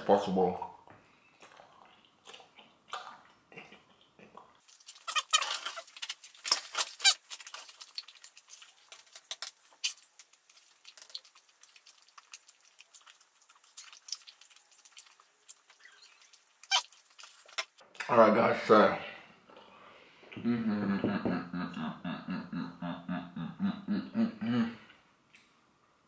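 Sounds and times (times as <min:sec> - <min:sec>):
wet gum chewing: 0:01.4 - 0:17.8.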